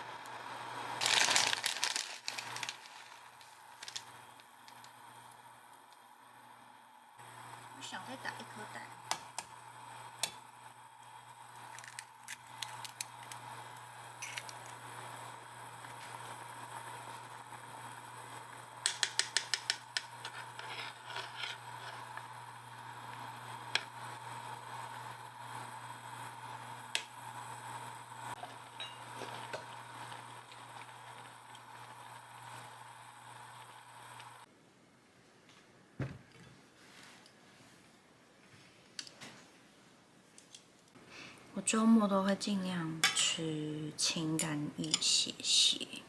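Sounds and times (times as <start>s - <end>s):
rapid clicks of beating in bowl: 18.8s - 20.1s.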